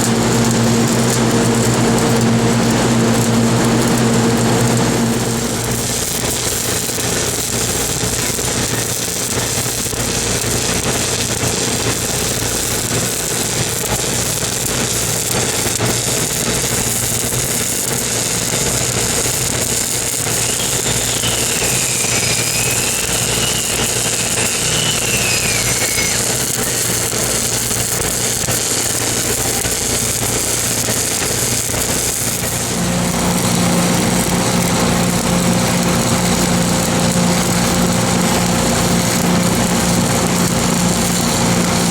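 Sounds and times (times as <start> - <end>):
welder engine running: 0.0 - 41.9
welding arc crackling hiss: 0.0 - 41.9.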